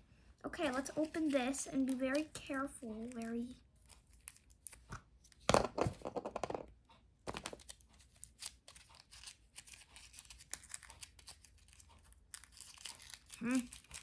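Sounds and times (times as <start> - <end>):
plastic packaging tearing and crinkling: 7.3 - 14.0.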